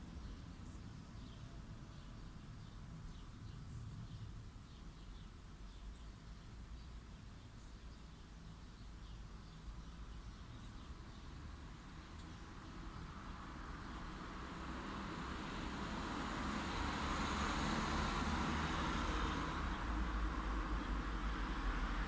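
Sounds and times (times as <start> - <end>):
road vehicle passing: 11.3 - 22.0.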